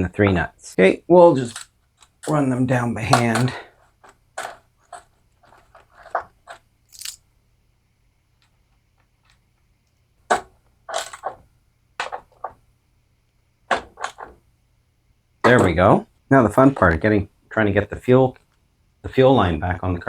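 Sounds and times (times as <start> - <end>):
metal nuts clicking and scraping: 1.4 - 7.2, 10.3 - 11.4.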